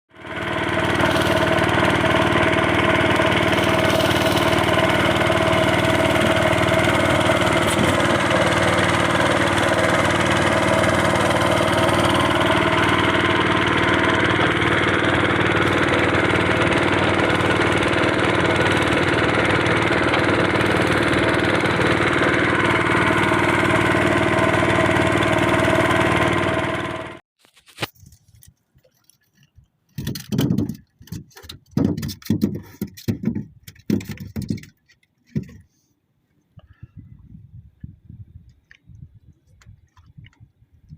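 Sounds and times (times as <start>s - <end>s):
engine running steadily: 0.1s - 27.2s.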